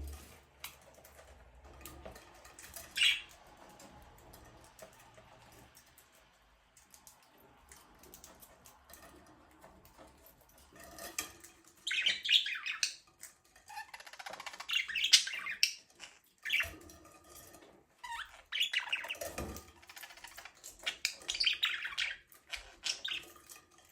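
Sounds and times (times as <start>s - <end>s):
budgies chirping and chattering: 2.5s - 4.6s, 10.9s - 17.0s, 18.0s - 23.9s.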